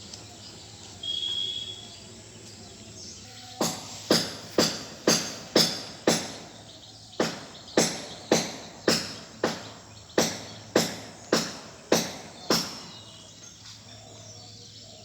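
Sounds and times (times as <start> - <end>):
sharp knocks: 3.6 - 6.6, 7.2 - 12.9.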